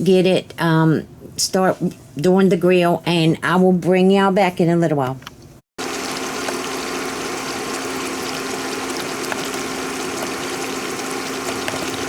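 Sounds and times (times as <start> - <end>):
vegetables sizzling in oil: 5.8 - 12.0.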